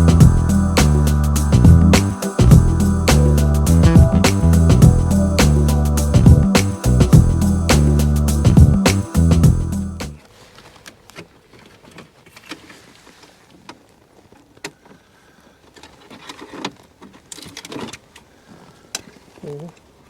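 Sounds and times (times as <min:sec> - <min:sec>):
background music: 0:00.0 - 0:10.2.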